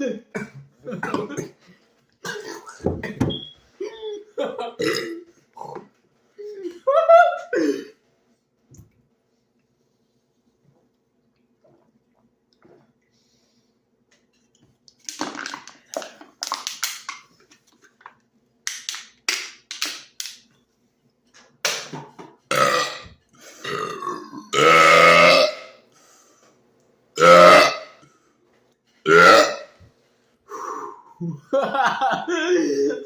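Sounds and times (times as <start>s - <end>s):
person belching: 4.8s - 5.9s, 22.5s - 25.7s, 27.2s - 27.9s, 29.1s - 29.7s.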